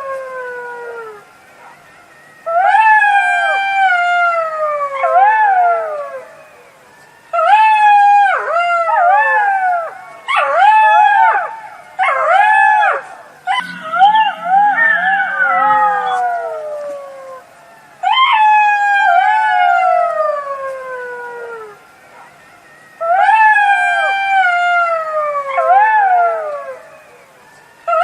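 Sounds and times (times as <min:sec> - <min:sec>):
jackal howling: 0:02.4 - 0:06.4, 0:07.4 - 0:22.4, 0:23.0 - 0:27.3
jackal yipping: 0:12.0 - 0:18.7.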